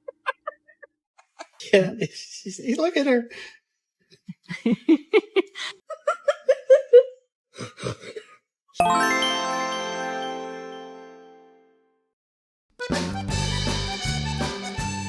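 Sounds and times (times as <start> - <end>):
bright chime ringing: 8.8 - 11.6.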